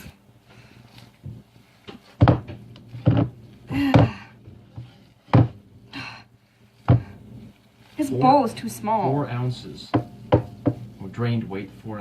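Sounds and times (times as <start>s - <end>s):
bowls and utensils knocking: 2.2s - 5.6s, 9.8s - 11.0s.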